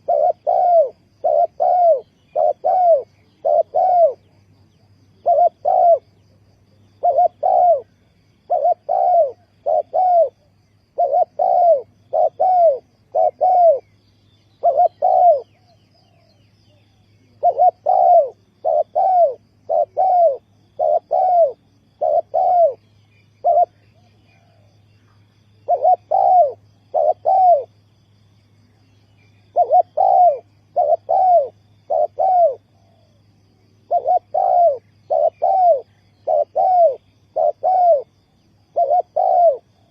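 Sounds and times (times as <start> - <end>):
dove cooing: 0.0 - 14.0, 14.6 - 24.8, 25.6 - 27.8, 29.2 - 39.9
faint steady hum: 0.0 - 39.9.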